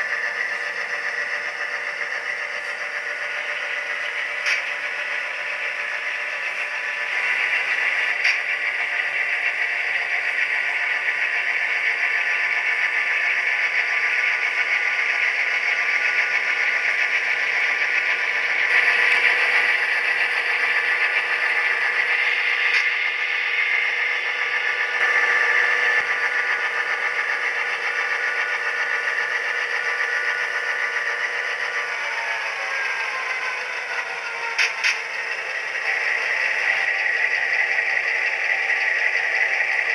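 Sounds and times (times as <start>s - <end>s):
tinny diesel locomotive engine: 0.0s - 39.9s.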